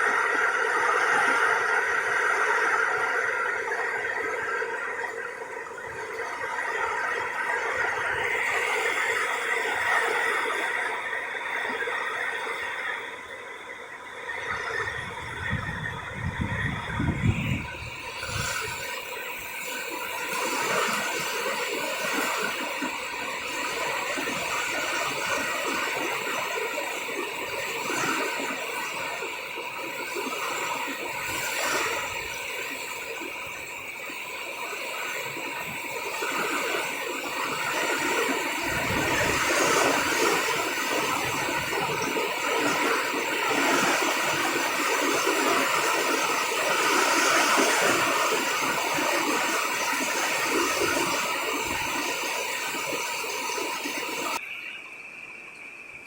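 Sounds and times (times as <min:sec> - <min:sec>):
heavy rain in wind: 0:14.1 - 0:29.2, 0:29.8 - 0:54.6.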